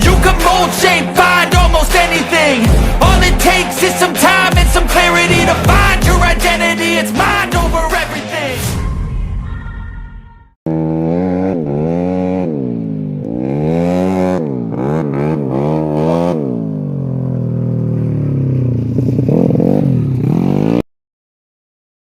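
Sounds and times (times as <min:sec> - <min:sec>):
scooter engine revving: 0:10.7 - 0:20.8.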